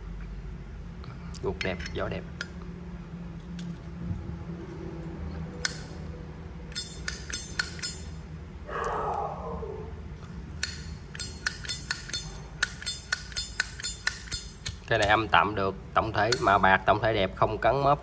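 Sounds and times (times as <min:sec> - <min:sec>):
lighter lid metallic clicks: 0:05.6 - 0:06.0, 0:06.7 - 0:08.2, 0:10.6 - 0:15.1.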